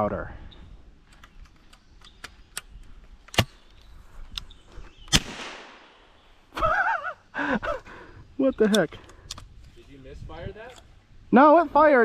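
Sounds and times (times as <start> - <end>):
gun handling clicks: 1.0 - 4.5, 8.6 - 9.7
shotgun cracks: 5.1 - 6.0.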